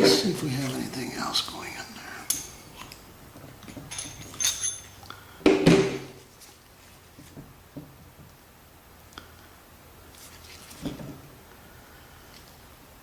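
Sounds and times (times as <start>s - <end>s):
metal parts clinking: 3.8s - 5.0s
knock on workbench: 5.5s - 6.1s.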